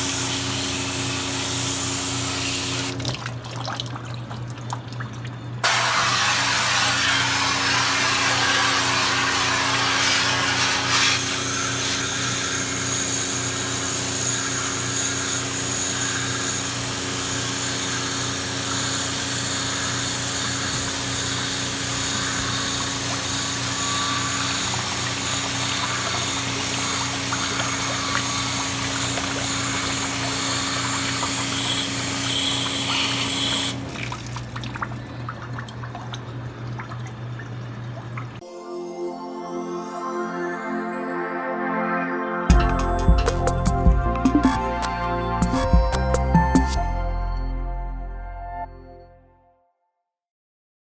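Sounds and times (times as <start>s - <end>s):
cleaning machine humming and hissing: 0.0s - 3.0s, 5.6s - 35.4s.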